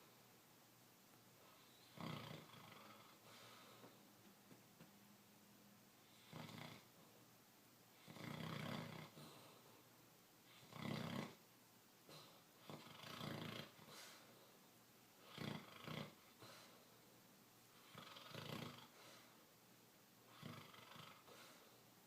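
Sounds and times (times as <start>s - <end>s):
dog snoring: 1.4s - 3.7s, 6.0s - 7.1s, 8.0s - 9.6s, 10.5s - 11.4s, 12.1s - 14.2s, 15.2s - 16.7s, 17.8s - 19.3s, 20.3s - 21.7s.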